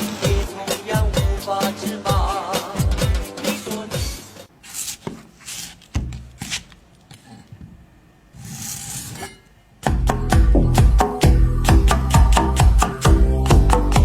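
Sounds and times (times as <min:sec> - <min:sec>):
music with steady beat: 0:00.0 - 0:04.5, 0:09.8 - 0:14.0
rubbing and scraping: 0:08.4 - 0:09.4.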